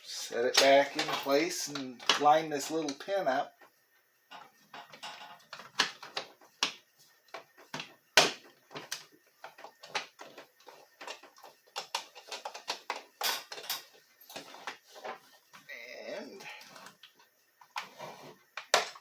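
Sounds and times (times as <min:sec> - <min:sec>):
plastic parts clicking and knocking: 0:00.5 - 0:03.0, 0:04.3 - 0:15.7, 0:18.5 - 0:19.0.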